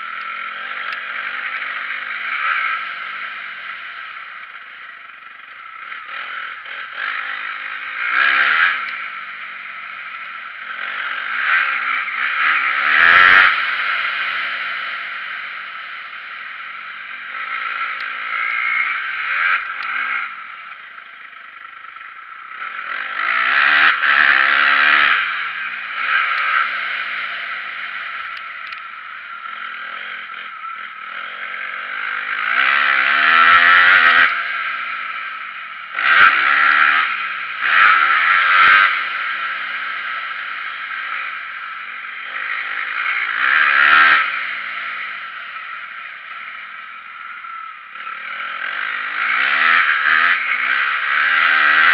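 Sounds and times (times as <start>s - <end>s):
motocross bike engine revving: 0.0s - 51.9s.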